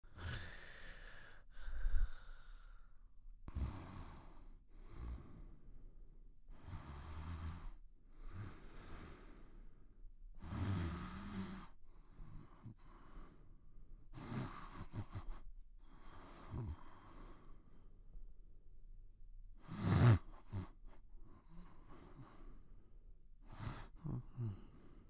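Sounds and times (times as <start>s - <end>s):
heavy sleeping breaths: 0.1s - 5.9s, 6.5s - 18.0s, 19.6s - 25.0s
low snore: 3.5s - 5.5s, 6.5s - 9.5s, 10.4s - 13.2s, 14.1s - 17.5s, 19.6s - 22.5s, 23.4s - 25.0s.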